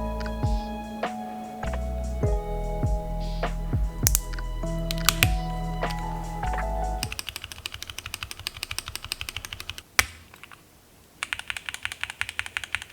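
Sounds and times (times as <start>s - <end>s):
background music: 0.0s - 7.2s
typing on mechanical keyboard: 7.0s - 10.6s, 11.2s - 12.9s.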